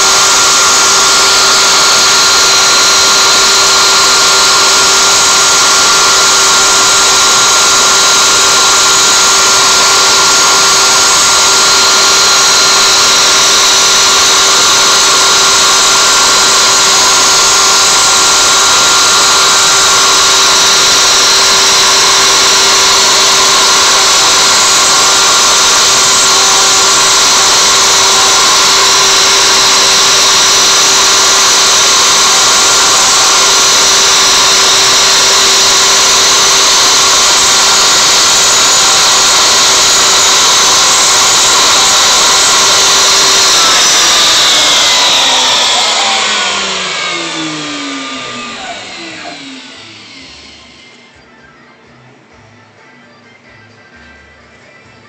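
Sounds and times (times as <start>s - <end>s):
router spindle whine: 0.0s - 51.5s.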